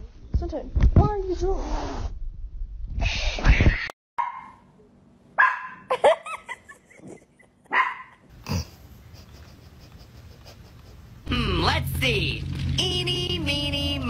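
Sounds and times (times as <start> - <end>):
dog barking: 4.2 - 4.6, 5.4 - 5.9, 7.7 - 8.2.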